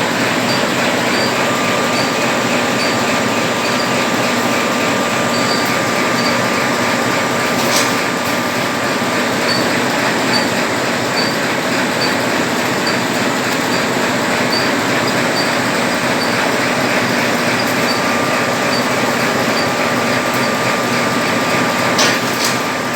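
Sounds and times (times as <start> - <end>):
thin steady whine: 0.0 - 21.4
packaging machine clattering: 0.1 - 22.9
light regular ticking: 0.4 - 7.9.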